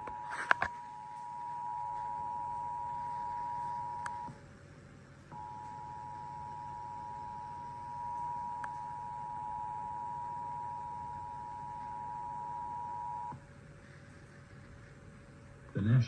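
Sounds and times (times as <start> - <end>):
two-tone alarm signal: 0.0 - 4.3, 5.3 - 13.4.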